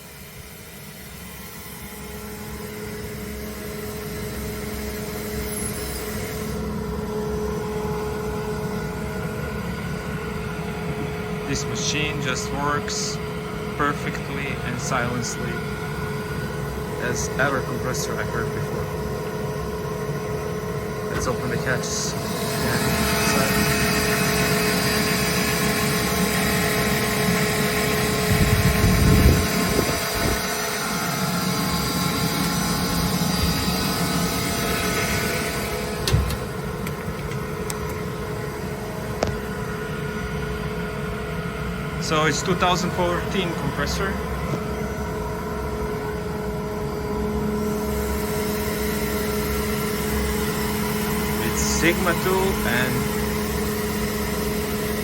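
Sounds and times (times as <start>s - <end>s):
air compressor humming: 0.0s - 55.0s
air noise: 7.9s - 46.7s.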